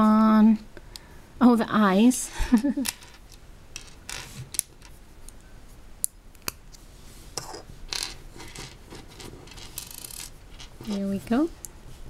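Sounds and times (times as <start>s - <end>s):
plastic pieces scraping and rustling: 7.9s - 11.2s.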